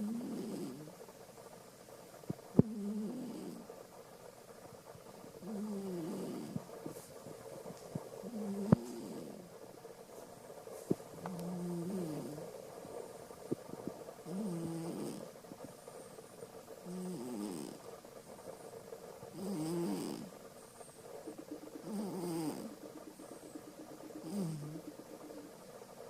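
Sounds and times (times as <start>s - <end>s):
cat snoring: 0.0s - 1.0s, 2.5s - 3.9s, 5.4s - 7.0s, 8.2s - 9.6s, 11.2s - 12.6s, 13.6s - 15.4s, 16.8s - 18.0s, 19.3s - 20.4s, 21.7s - 22.9s, 23.9s - 25.2s.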